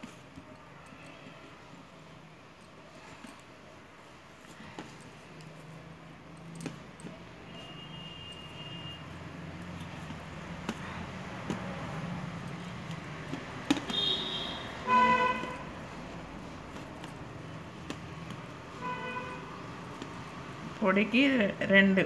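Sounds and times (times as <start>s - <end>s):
background traffic: 0.0s - 22.0s
vehicle horn honking: 7.5s - 9.1s, 13.9s - 15.7s, 18.8s - 19.5s.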